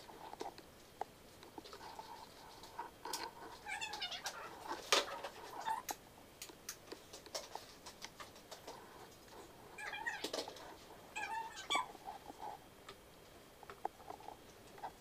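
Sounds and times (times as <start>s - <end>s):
animal's high wavering cries: 11.2s - 12.0s.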